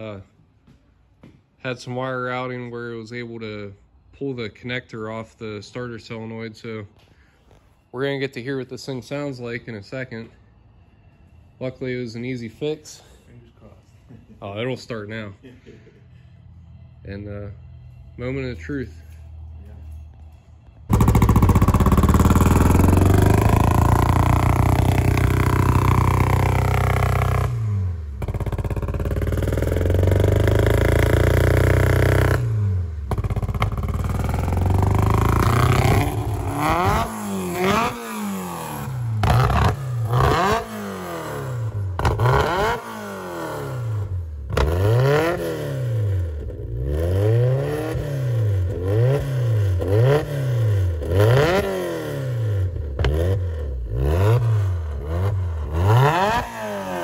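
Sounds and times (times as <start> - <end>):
car engine starting and revving: 20.9 - 57.0.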